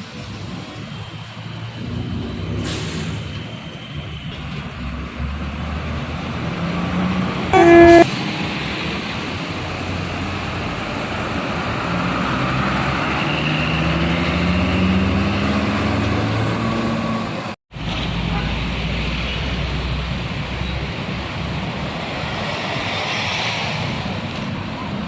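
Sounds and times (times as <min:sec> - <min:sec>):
traffic: 0:00.0 - 0:25.0
loud bus air horn blast: 0:07.5 - 0:08.1.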